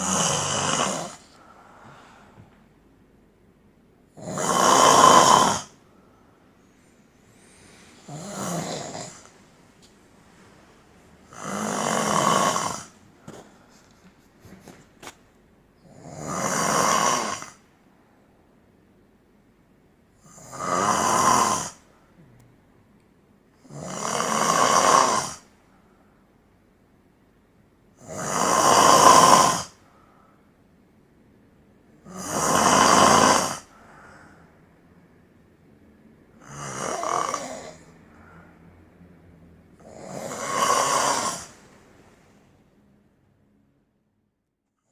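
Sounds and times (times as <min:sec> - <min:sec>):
man snoring loudly: 0:00.0 - 0:01.3, 0:04.1 - 0:05.8, 0:08.0 - 0:09.3, 0:11.2 - 0:13.0, 0:15.8 - 0:17.6, 0:20.2 - 0:21.8, 0:23.6 - 0:25.5, 0:28.0 - 0:29.8, 0:32.0 - 0:33.7, 0:36.4 - 0:37.9, 0:39.8 - 0:41.6.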